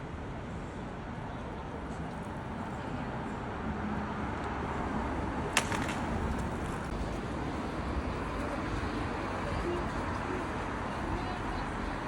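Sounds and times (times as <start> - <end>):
traffic rumble: 0.0 - 12.0
sharp clack: 5.5 - 6.5.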